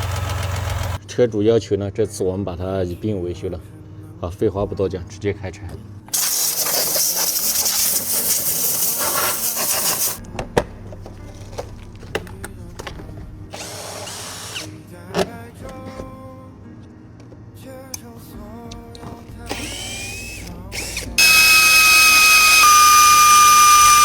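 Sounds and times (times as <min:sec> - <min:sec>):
power tool spinning fasteners: 0:06.1 - 0:10.2, 0:13.5 - 0:14.8, 0:19.5 - 0:24.0.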